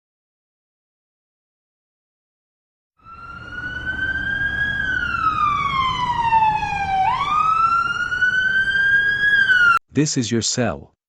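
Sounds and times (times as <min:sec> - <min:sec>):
low engine rumble: 0:03.0 - 0:09.7
police siren wailing: 0:03.0 - 0:09.8.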